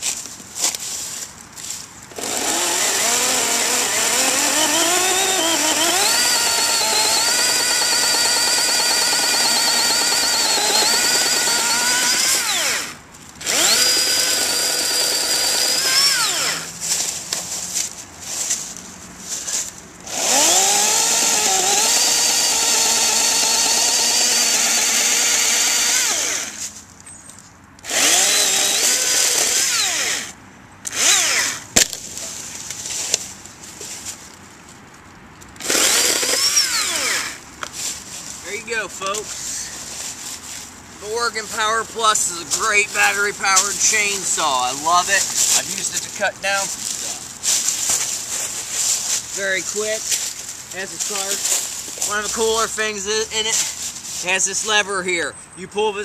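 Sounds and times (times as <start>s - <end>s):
electric chainsaw cutting log: 2.1s - 16.7s, 20.1s - 26.7s, 27.8s - 31.7s, 35.6s - 37.4s.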